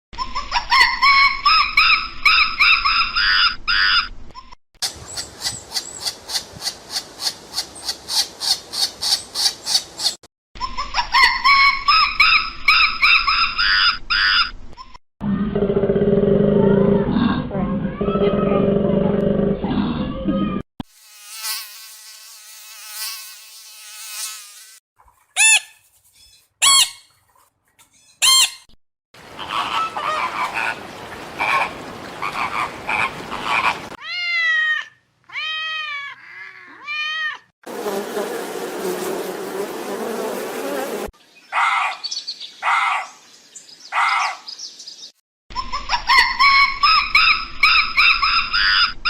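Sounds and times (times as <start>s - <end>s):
rising-and-falling animal calls: 15.2s - 20.6s, 29.3s - 37.5s, 45.9s - 49.0s
buzzing insect-like drone: 20.9s - 24.8s, 37.7s - 41.1s
overlapping animal calls: 29.2s - 34.0s.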